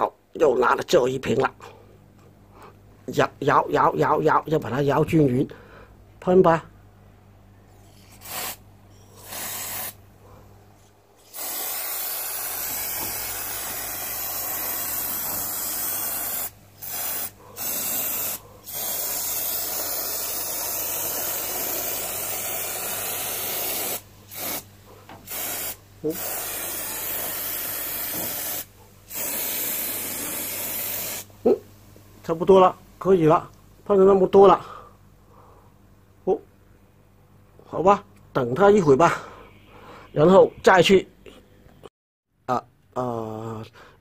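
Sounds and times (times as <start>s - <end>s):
aerosol can spraying: 7.8s - 10.0s, 11.2s - 31.3s.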